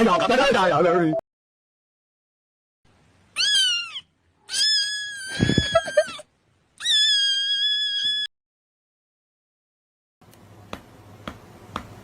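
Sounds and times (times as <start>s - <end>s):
cat screaming: 3.3s - 8.3s.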